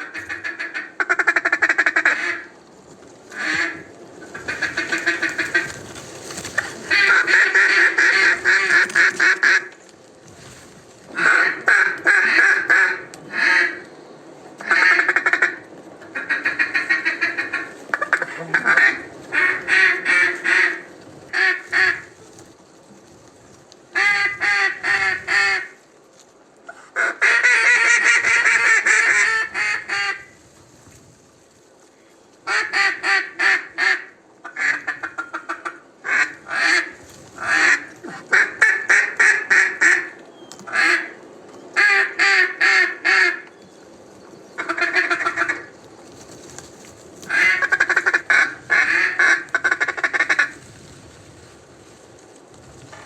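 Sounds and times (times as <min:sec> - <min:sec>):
duck call quacking: 0:00.0 - 0:02.5, 0:03.3 - 0:05.7, 0:06.6 - 0:09.7, 0:11.1 - 0:13.8, 0:14.6 - 0:15.6, 0:16.2 - 0:22.0, 0:24.0 - 0:25.8, 0:26.7 - 0:30.3, 0:32.5 - 0:40.1, 0:40.7 - 0:41.2, 0:41.8 - 0:43.4, 0:44.6 - 0:45.7, 0:47.3 - 0:50.5.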